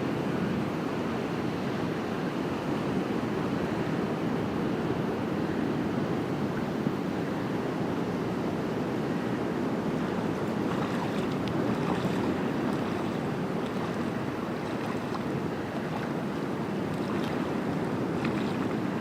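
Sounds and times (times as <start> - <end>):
wind on microphone: 0.0 - 19.0
moving water: 9.0 - 19.0.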